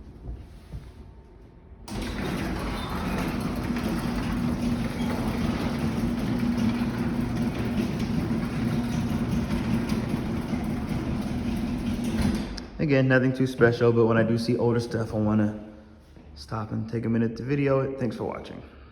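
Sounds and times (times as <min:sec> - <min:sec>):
garage door opener humming: 0:01.8 - 0:12.8.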